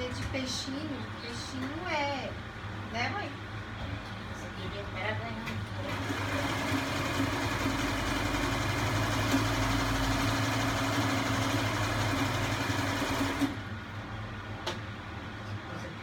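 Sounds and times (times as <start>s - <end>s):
electric sewing machine running: 5.8s - 13.6s.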